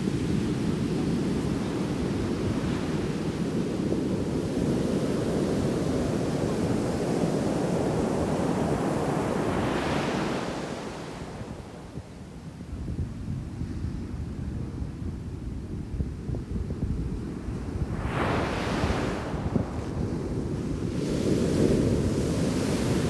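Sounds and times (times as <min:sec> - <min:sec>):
wind rumble on microphone: 0:00.0 - 0:23.0
waves crashing on beach: 0:17.9 - 0:20.0, 0:20.7 - 0:23.0.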